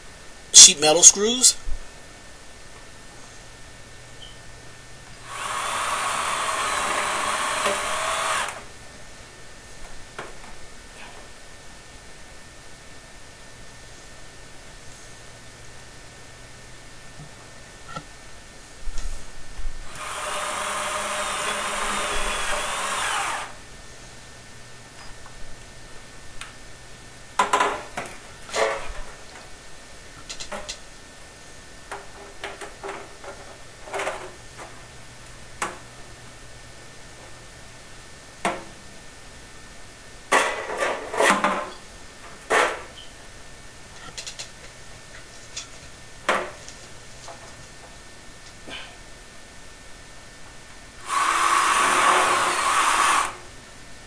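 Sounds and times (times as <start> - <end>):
screw gun whining: 5.2 - 8.7, 19.9 - 23.6, 51.0 - 53.4.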